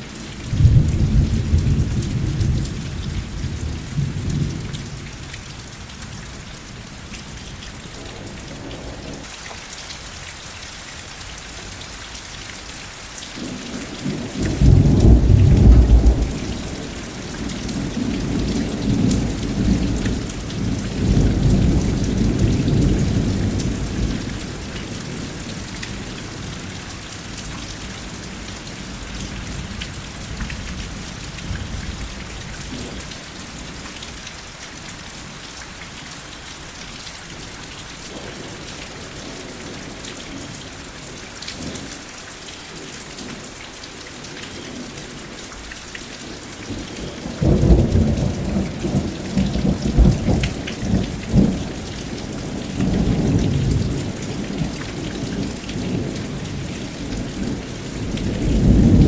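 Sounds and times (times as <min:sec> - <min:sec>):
steady rain falling: 0:00.0 - 0:59.0
thunder rumbling: 0:14.0 - 0:24.6, 0:47.2 - 0:54.7, 0:55.8 - 0:59.0.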